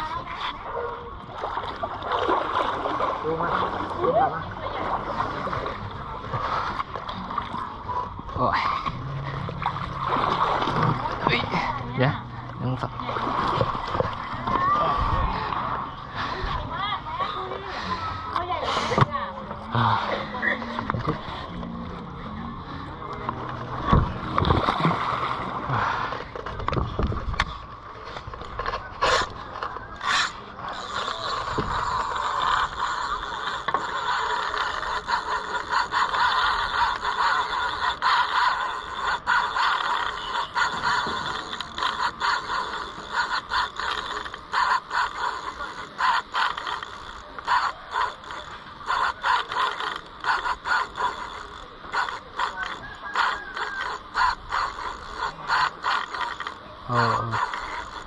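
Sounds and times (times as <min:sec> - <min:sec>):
fishing reel ratcheting and whirring: 0:08.4 - 0:22.1, 0:28.1 - 0:58.0.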